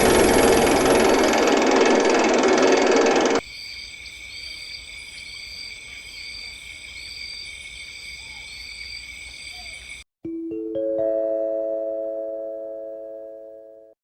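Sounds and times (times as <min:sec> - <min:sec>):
insects chirping: 0:03.4 - 0:10.0.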